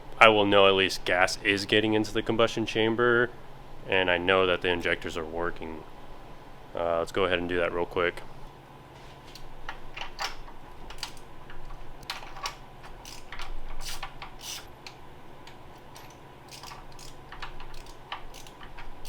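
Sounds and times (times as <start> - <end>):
faint steady hum: 0.0 - 19.0
hand tools clicking and clinking: 10.0 - 19.0.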